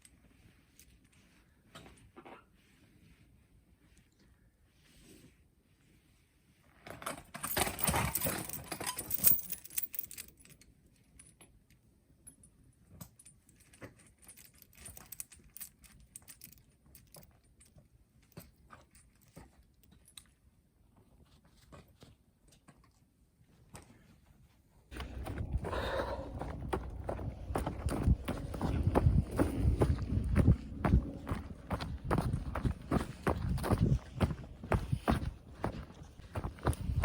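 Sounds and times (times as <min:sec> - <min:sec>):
metallic jangling: 0:07.3 - 0:11.3.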